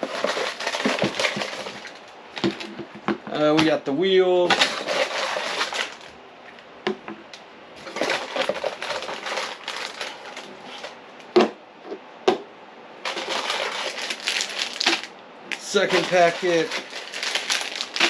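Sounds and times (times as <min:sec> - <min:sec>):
plastic bags crinkling and rattling: 0:00.0 - 0:03.0, 0:04.5 - 0:06.1, 0:07.8 - 0:11.0, 0:13.0 - 0:18.0
items knocking when set down: 0:00.0 - 0:03.8.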